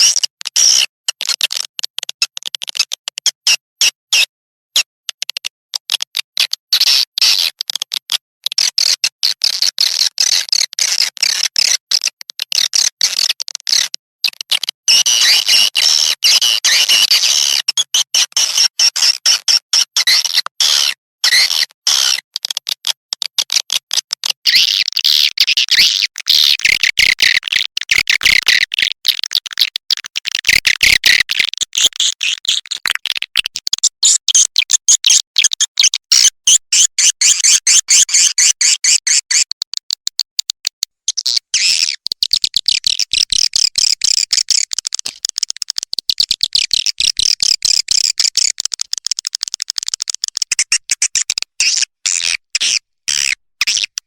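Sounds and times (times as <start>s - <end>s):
swiftlet chirps and twitters: 40.4s - 49.2s.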